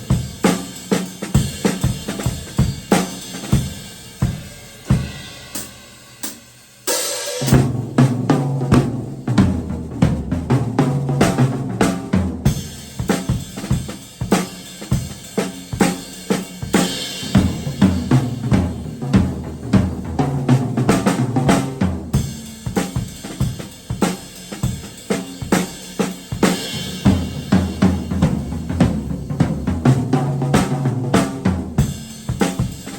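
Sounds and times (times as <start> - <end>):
hi-hat and cymbals: 0.0 - 9.5, 10.8 - 32.9
snare and bass drum groove: 0.0 - 32.9.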